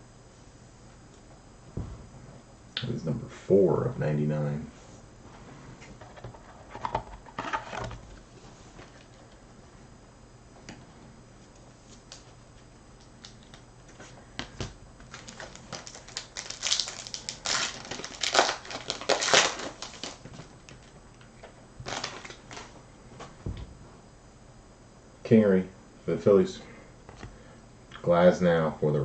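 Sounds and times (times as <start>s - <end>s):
foil wrapper crinkling: 15.0s - 20.9s, 21.8s - 22.8s.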